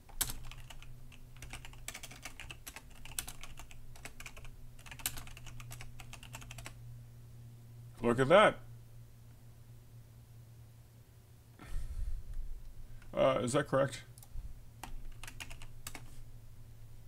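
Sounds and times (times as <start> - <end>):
typing on computer keyboard: 0.1 - 6.8, 14.2 - 16.1.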